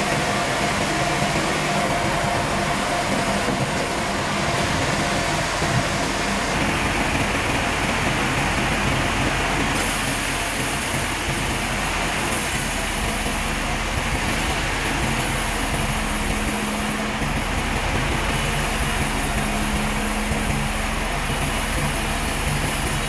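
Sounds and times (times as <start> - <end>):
sawmill machinery running: 0.0 - 23.0
steady machine hum: 0.0 - 23.0.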